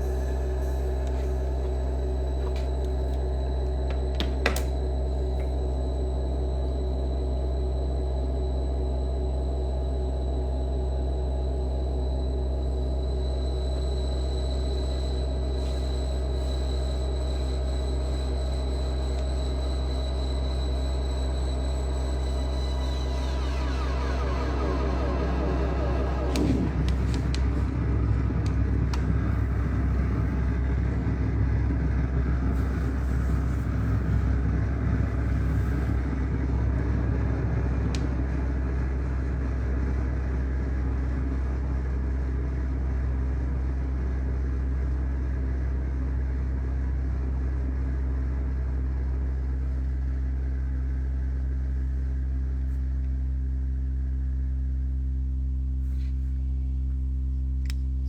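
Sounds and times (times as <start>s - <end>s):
synthesizer drone chord: 0.0s - 31.3s.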